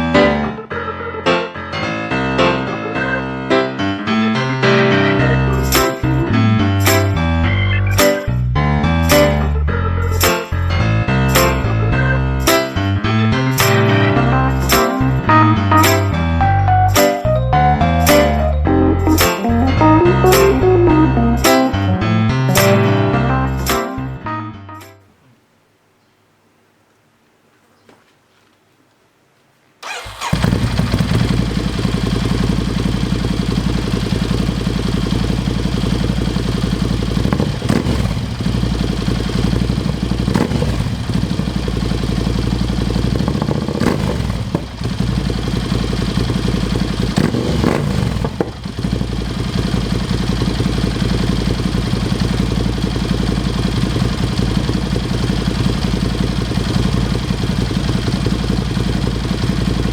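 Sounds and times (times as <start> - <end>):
motorcycle engine idling: 29.8 - 59.9
motorcycle throttle blips: 29.8 - 59.9.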